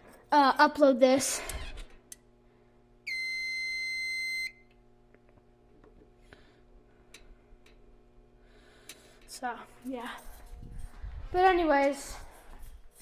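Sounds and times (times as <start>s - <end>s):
fire alarm electronic beep: 3.0s - 4.7s.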